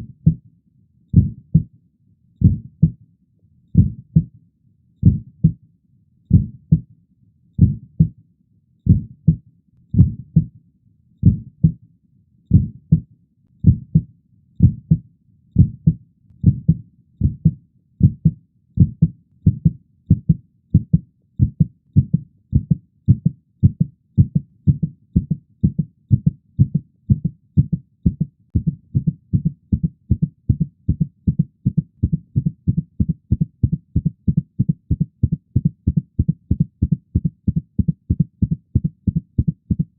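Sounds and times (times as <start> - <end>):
muffled heartbeat thumps: 1.2 - 1.7, 2.4 - 3.0, 3.8 - 4.3, 5.0 - 5.6, 6.3 - 6.8, 7.6 - 8.1, 8.9 - 9.4, 10.0 - 10.5, 11.2 - 11.8, 12.5 - 13.0, 15.6 - 39.9.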